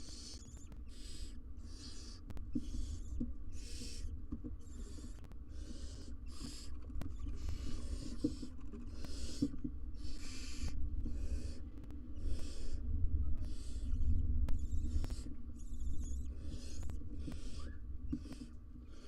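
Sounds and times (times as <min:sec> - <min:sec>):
owl nestlings hissing calls: 0:00.0 - 0:12.8, 0:13.4 - 0:19.0.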